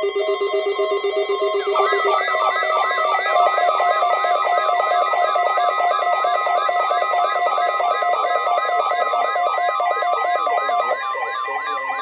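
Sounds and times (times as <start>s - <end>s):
up-sweeping electronic alarm chirps: 1.6s - 11.0s.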